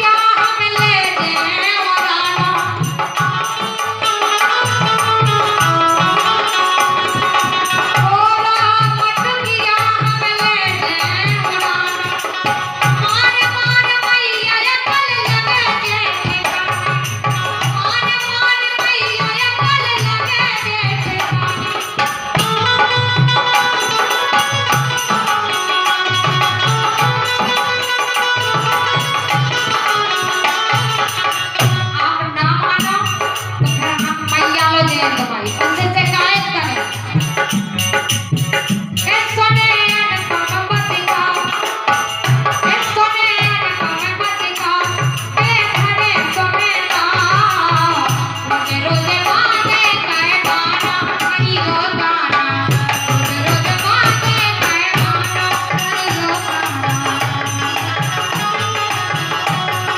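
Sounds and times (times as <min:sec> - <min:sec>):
rattling percussion: 0:00.0 - 0:59.9
woman singing: 0:00.0 - 0:59.9
hand drum beat: 0:14.9 - 0:59.9.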